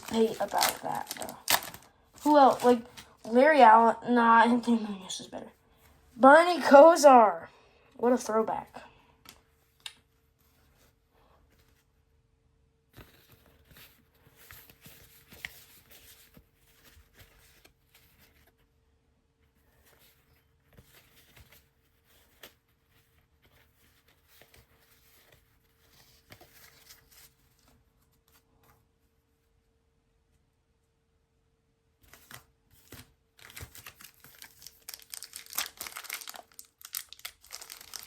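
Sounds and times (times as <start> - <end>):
cardboard cards rustling and clicking: 0.0 - 3.2, 32.0 - 38.0.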